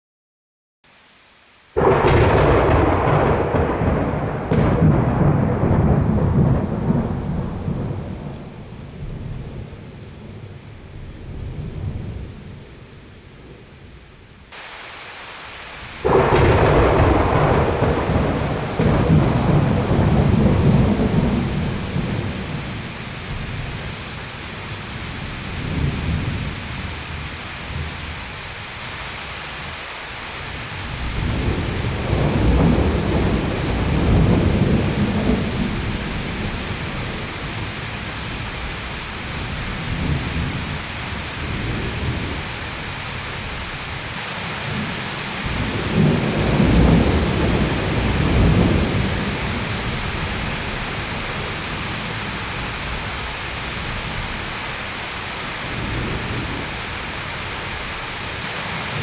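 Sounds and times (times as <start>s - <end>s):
steady rain: 0.8s - 59.0s
loud thunderclap: 1.8s - 12.6s, 16.0s - 24.1s, 24.7s - 28.1s, 30.5s - 43.8s, 44.7s - 53.2s
rolling thunder: 1.8s - 12.8s, 15.8s - 28.2s, 30.4s - 44.1s, 44.7s - 54.6s.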